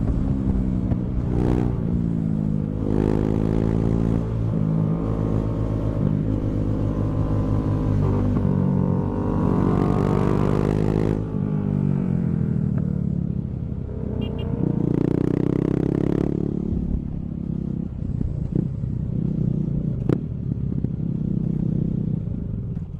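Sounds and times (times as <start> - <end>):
motorcycle engine revving: 0.0 - 12.8, 13.9 - 22.9.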